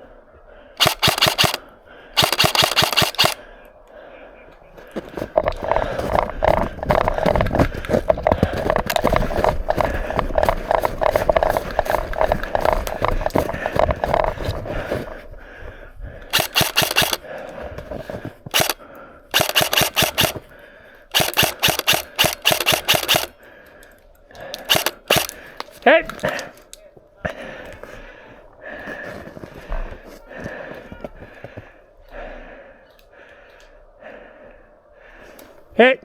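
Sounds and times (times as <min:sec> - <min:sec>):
rapid airsoft gunfire: 0:00.8 - 0:01.6, 0:02.2 - 0:03.4, 0:08.6 - 0:14.5, 0:16.3 - 0:17.2, 0:18.5 - 0:20.4, 0:21.1 - 0:23.4, 0:24.6 - 0:25.4
footsteps crunching through snow: 0:04.8 - 0:18.8.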